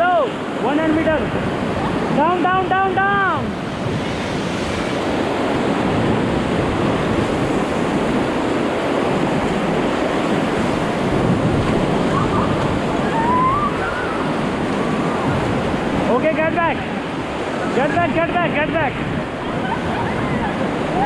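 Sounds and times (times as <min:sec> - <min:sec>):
rushing whitewater: 0:00.0 - 0:21.0
wind buffeting microphone: 0:00.0 - 0:21.0.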